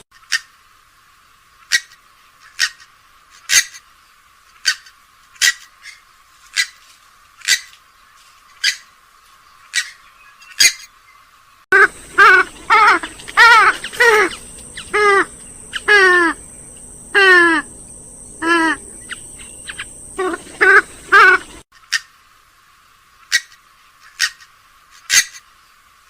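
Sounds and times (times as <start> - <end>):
background hiss: 0.2 - 26.0
sharp bird calls: 4.6 - 6.8, 9.6 - 22.2
harsh cackling bird calls: 11.7 - 22.2.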